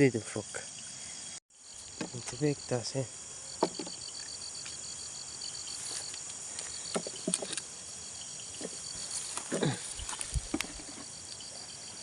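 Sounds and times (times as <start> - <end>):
insect pulsed chirp: 0.0 - 12.0
high insect buzz: 0.3 - 12.0.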